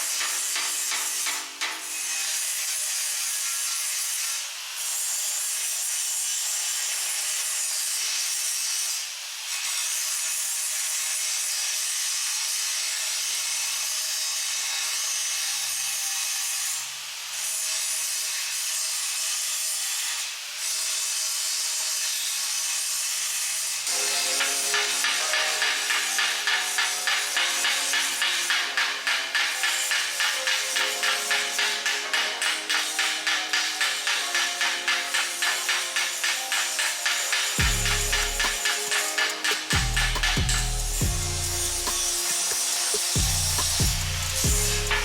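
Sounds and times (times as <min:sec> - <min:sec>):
angle grinder grinding metal: 0:12.8 - 0:45.0.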